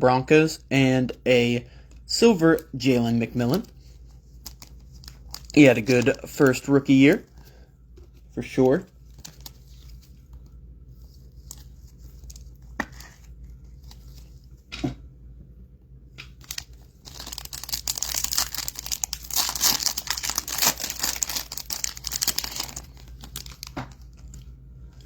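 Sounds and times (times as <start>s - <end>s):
foil wrapper tearing and crinkling: 4.3s - 7.3s, 16.4s - 24.4s.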